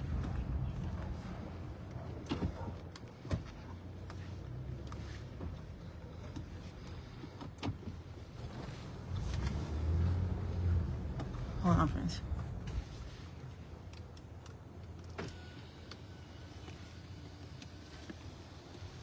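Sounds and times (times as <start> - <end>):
car engine humming: 0.0 - 13.8.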